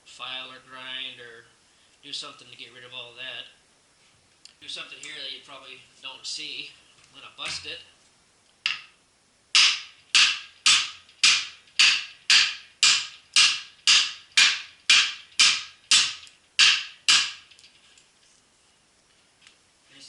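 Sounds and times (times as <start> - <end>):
sharp ringing blows on glass: 9.6 - 17.5.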